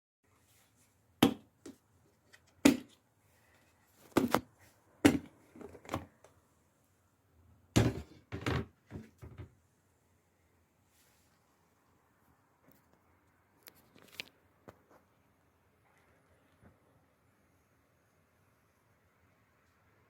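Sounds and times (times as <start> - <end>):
kitchen items knocking and thudding: 1.2 - 1.8, 2.6 - 3.0, 4.0 - 6.2, 7.7 - 9.5.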